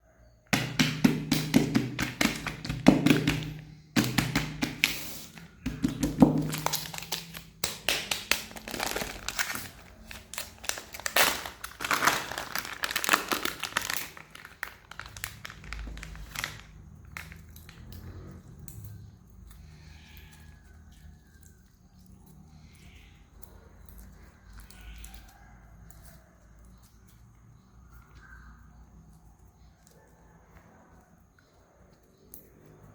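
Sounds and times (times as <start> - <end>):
crinkling and clicking handling sounds: 1.5 - 19.6.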